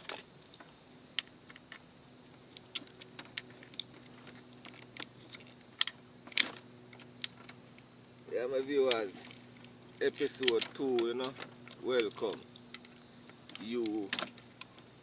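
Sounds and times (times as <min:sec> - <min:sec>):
faint steady hum: 0:00.0 - 0:15.0
light clicks and taps: 0:08.8 - 0:12.9.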